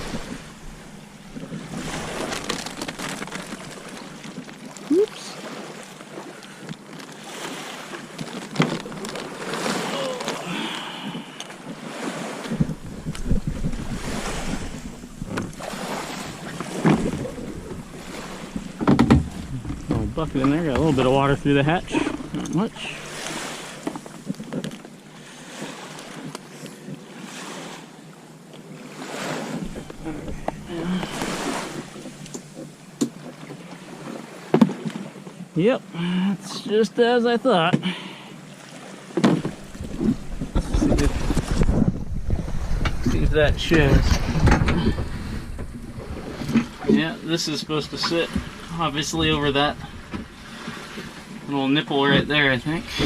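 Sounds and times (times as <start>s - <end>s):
water lapping against kayak hull: 0.0s - 53.0s
small splashes and knocks: 1.3s - 25.0s, 28.5s - 35.4s
wind on microphone: 12.4s - 23.6s, 39.4s - 46.9s.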